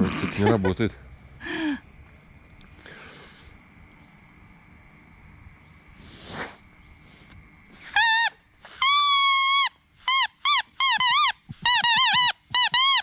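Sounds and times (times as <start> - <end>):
seed-pod whistle: 6.1 - 13.0.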